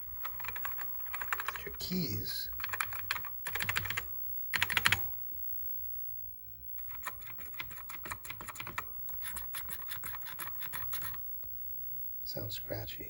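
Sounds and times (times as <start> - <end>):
scratchy keyboard keystrokes: 0.0 - 1.8, 2.5 - 5.1, 6.8 - 11.2.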